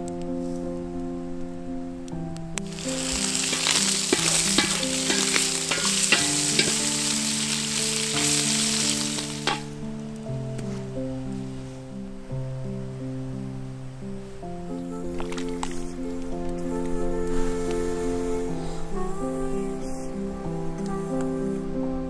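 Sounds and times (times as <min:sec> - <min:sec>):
background music: 0:00.0 - 0:22.0
campfire crackles: 0:02.5 - 0:10.9
food sizzling in a pan: 0:02.7 - 0:09.8.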